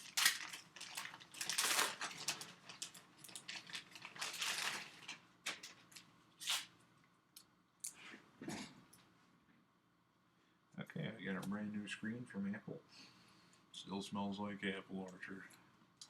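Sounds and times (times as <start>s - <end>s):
plastic packaging crinkling and tearing: 0.0s - 6.7s.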